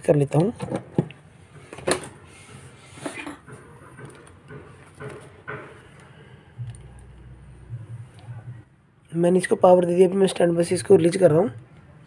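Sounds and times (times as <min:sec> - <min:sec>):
clicks and knocks of handling: 0:03.0 - 0:07.1.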